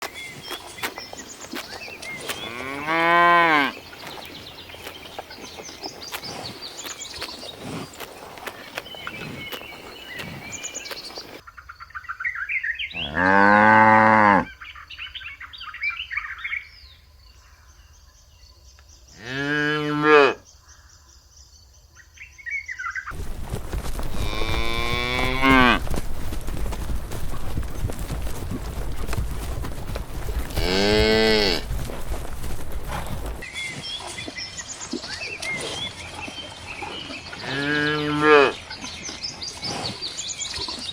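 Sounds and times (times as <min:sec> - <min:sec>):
birds chirping softly: 0:00.0 - 0:13.6, 0:20.4 - 0:40.9
cow mooing: 0:24.1 - 0:25.8, 0:30.5 - 0:31.7.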